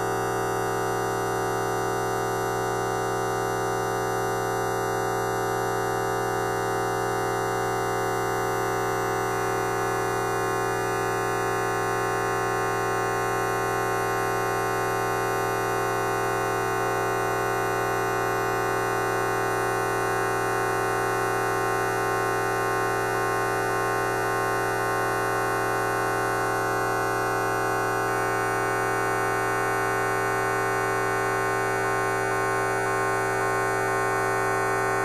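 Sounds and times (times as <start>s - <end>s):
buzzing drone of held tones: 0.0s - 35.0s.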